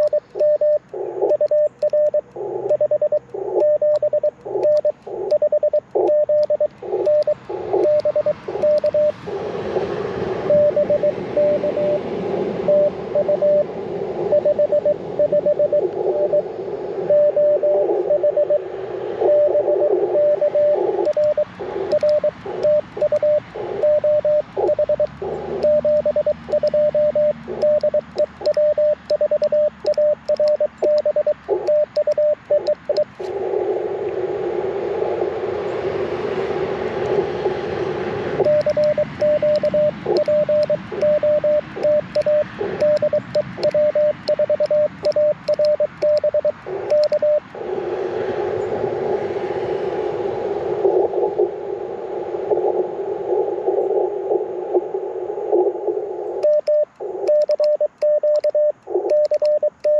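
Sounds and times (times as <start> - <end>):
morse code tone: 0.0 - 9.2, 10.4 - 33.3, 38.4 - 47.6, 56.4 - 59.9
radio band noise hiss: 0.0 - 59.9.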